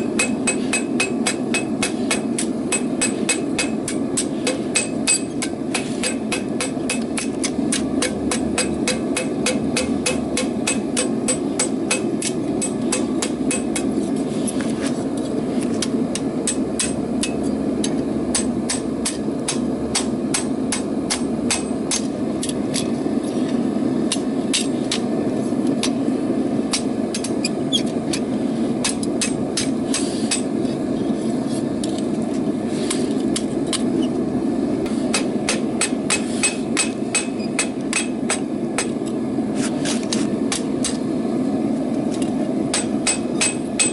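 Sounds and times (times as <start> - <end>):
hammer striking metal on anvil: 0.0 - 14.0, 16.1 - 22.1, 24.1 - 25.0, 28.8 - 30.5, 34.9 - 39.0, 42.7 - 43.9.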